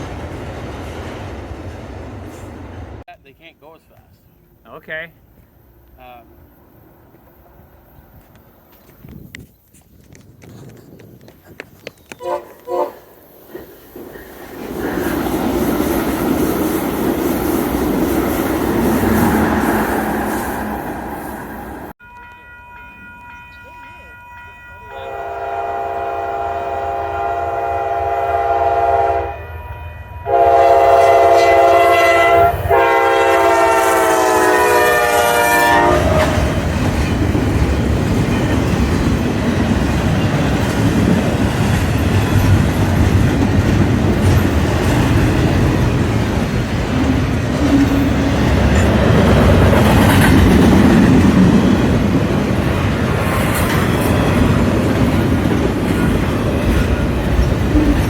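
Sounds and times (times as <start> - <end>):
train rumble and wheel clatter: 0.0 - 58.0
locomotive air horn: 12.2 - 13.0, 24.8 - 36.5.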